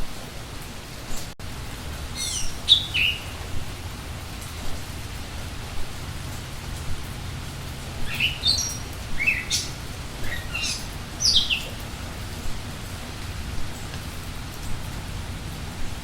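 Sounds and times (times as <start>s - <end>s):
steady rain falling: 0.0s - 16.0s
songbird chirping: 2.1s - 3.9s, 6.7s - 12.2s.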